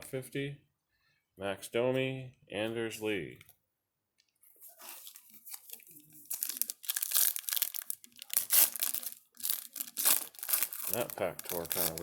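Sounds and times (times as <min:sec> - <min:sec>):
wrapper tearing and crinkling: 0:04.8 - 0:12.0.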